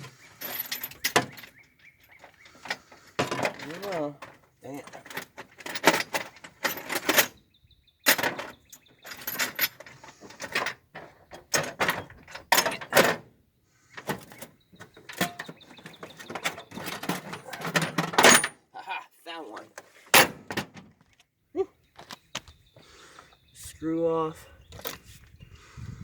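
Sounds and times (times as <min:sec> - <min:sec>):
metal tools clattering: 0:00.0 - 0:07.4, 0:08.0 - 0:13.2, 0:14.0 - 0:18.6.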